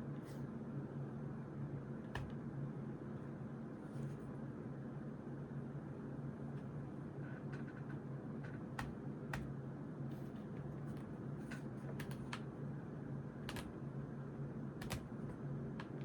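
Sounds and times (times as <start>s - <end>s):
steady low hum: 0.0s - 16.0s
pen tapping on paper: 2.1s - 2.4s, 8.8s - 9.5s.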